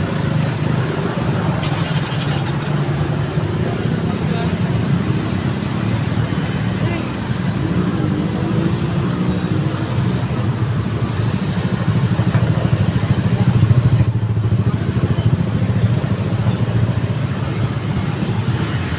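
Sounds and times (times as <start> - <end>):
diesel bus engine running: 9.4 - 18.9.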